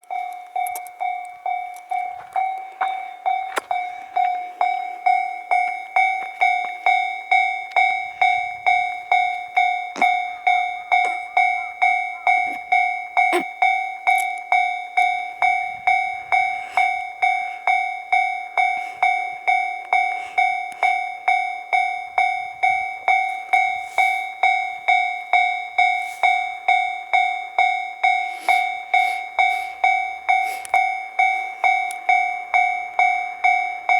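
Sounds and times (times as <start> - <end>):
level crossing warning bell ringing: 0.0 - 33.9.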